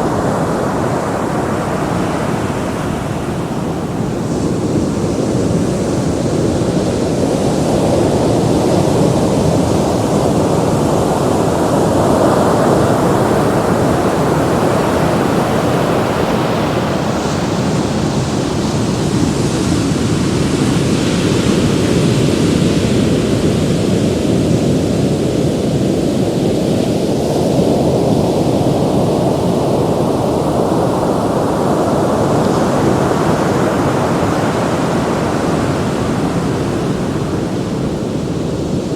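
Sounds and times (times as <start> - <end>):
ocean waves breaking: 0.0 - 38.9.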